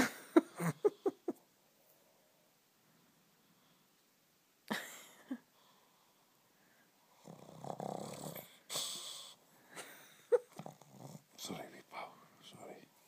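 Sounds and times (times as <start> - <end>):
dog snoring: 7.1 - 9.4, 10.5 - 11.5.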